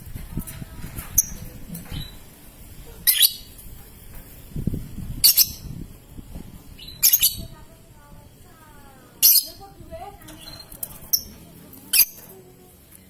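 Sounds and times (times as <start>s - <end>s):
lovebird chirps: 3.0s - 3.6s, 5.2s - 5.8s, 6.7s - 7.6s, 9.2s - 9.7s, 10.3s - 12.3s.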